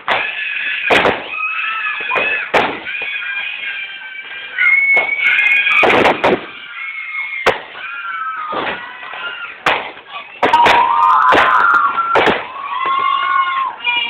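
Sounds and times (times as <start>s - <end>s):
firecracker bangs: 0.0s - 1.4s, 2.1s - 3.0s, 5.0s - 6.6s, 7.4s - 7.8s, 9.6s - 12.6s.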